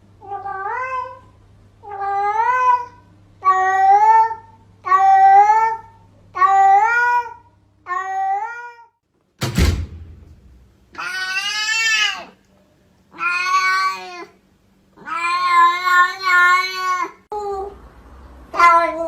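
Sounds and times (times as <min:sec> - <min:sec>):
thump: 0:09.4 - 0:10.8
cat meowing: 0:13.1 - 0:14.3, 0:15.0 - 0:17.2.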